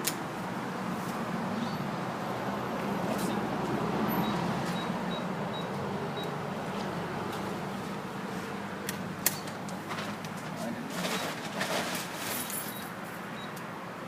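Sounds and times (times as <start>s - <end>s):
keypad lock beeps: 4.2s - 6.3s, 12.7s - 13.6s.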